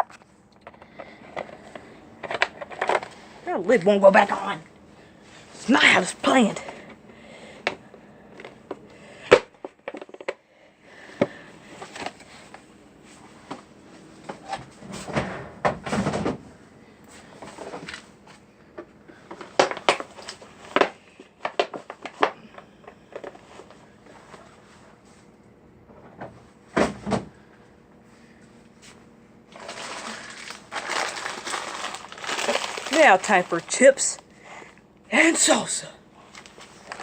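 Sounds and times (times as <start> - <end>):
crunching and scraping: 29.5 - 34.8, 36.2 - 37.0.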